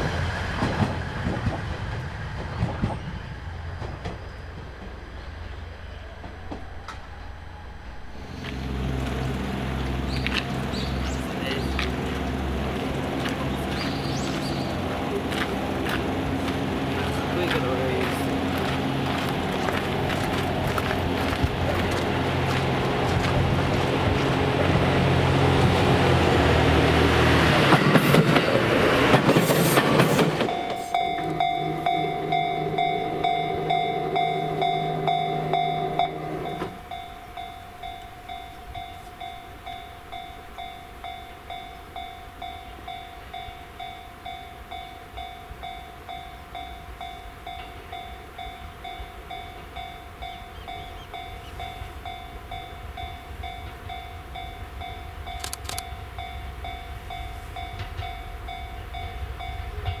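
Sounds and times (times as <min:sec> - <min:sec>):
train low hum: 0:00.0 - 1:00.0
level crossing warning bell: 0:29.9 - 1:00.0.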